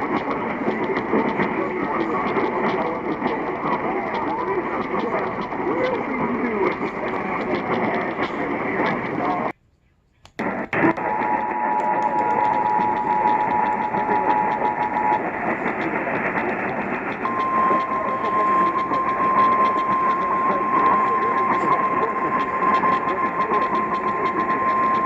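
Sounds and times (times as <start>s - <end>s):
steady warning alarm tone: 0.0s - 9.5s, 10.8s - 25.0s
two-tone attention signal over radio: 10.8s - 25.0s.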